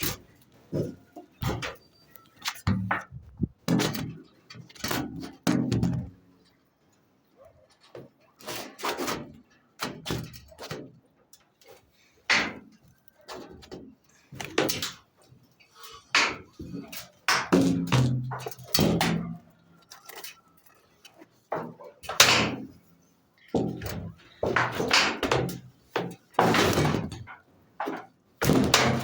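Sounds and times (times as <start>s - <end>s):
irregular knocks and clunks: 2.6s - 4.0s.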